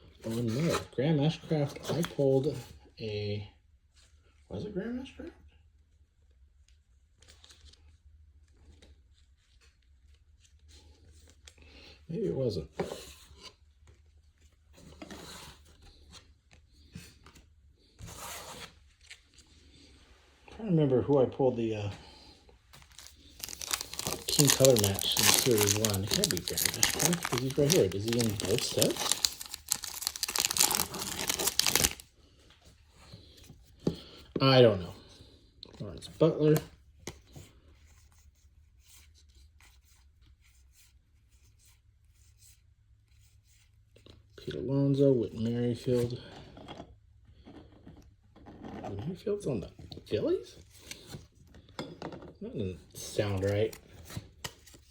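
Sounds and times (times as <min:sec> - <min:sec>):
trading cards shuffled by hand: 0:22.8 - 0:32.0, 0:53.1 - 0:54.9.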